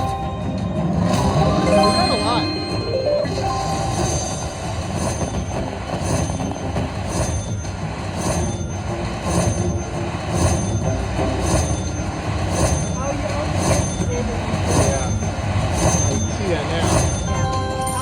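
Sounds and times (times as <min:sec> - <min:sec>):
steady beat: 0:00.0 - 0:06.8
faint chiming tones: 0:00.0 - 0:18.0
slot machine bonus sounds: 0:00.0 - 0:18.0.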